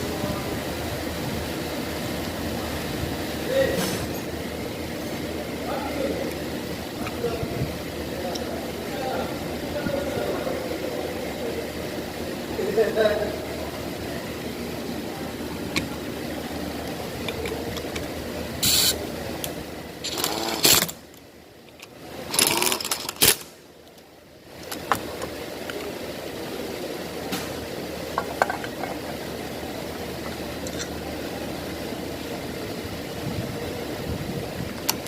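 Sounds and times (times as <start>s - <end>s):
steady background hum: 0.0s - 35.0s
tools clicking and clattering: 21.7s - 23.5s.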